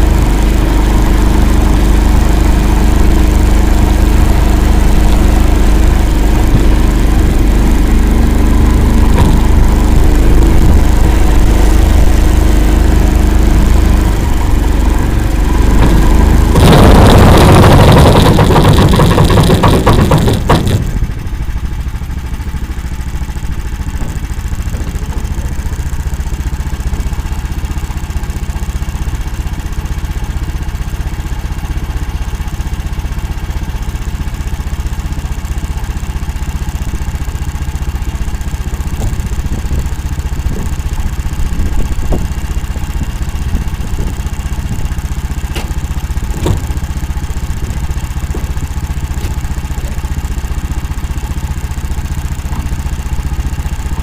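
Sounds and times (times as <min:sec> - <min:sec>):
vehicle engine running: 0:00.0 - 0:54.0
clicks and knocks from vehicle: 0:09.0 - 0:09.6, 0:15.8 - 0:21.0, 0:23.8 - 0:25.6, 0:45.5 - 0:46.9, 0:47.6 - 0:50.1, 0:52.5 - 0:52.9.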